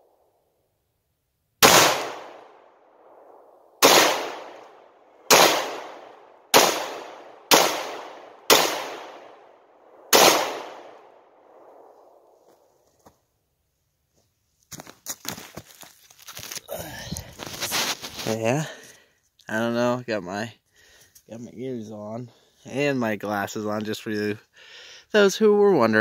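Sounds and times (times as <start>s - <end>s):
pistol shots with echo: 1.6s - 11.9s.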